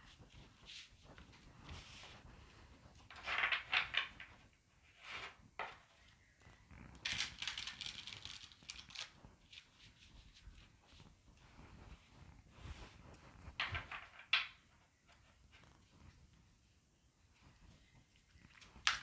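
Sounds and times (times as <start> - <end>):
cards being shuffled by hand: 6.7 - 14.5, 18.5 - 19.0.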